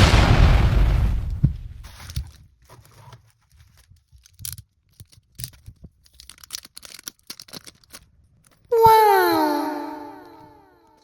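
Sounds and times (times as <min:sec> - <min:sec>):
explosion sound effect: 0:00.0 - 0:01.7
packaging rustling and tearing: 0:01.8 - 0:08.7.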